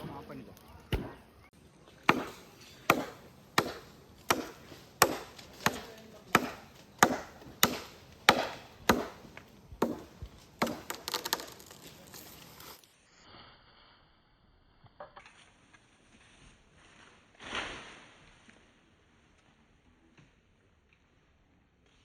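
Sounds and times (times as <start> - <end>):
blade chopping wood: 0.9 - 1.2, 2.0 - 11.8.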